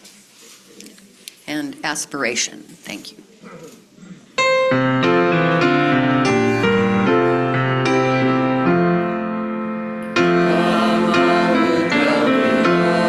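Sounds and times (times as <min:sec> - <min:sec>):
piano playing slow chords: 0:04.4 - 0:13.0.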